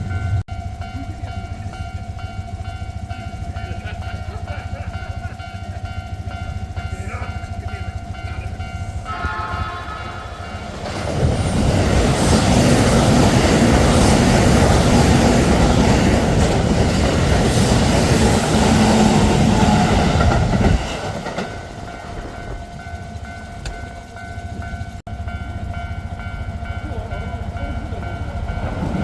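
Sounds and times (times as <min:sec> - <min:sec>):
train wheels clattering over rails: 0:00.0 - 0:25.3, 0:26.2 - 0:29.0
level crossing warning bell: 0:00.0 - 0:29.0.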